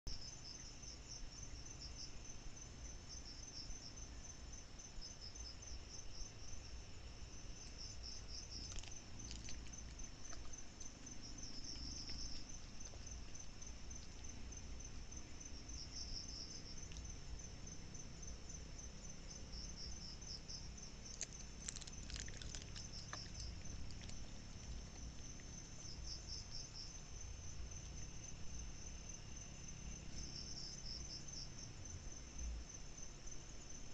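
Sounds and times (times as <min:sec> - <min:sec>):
crickets chirping: 0:00.1 - 0:33.9.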